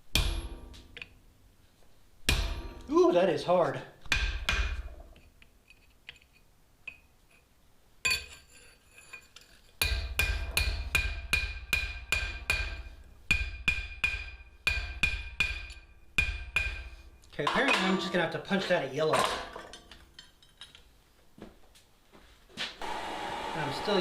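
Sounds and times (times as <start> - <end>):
hammer striking punch on anvil: 0.1 - 0.7, 2.3 - 2.8.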